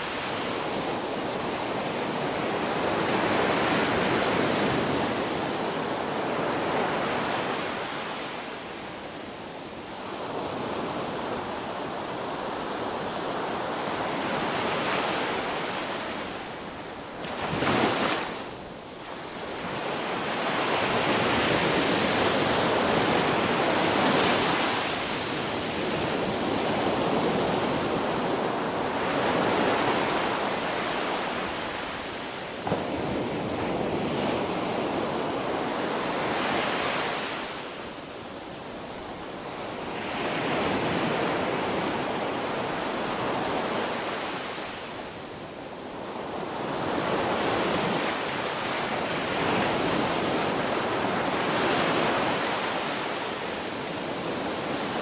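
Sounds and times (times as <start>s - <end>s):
ocean waves breaking on beach: 0.0s - 55.0s.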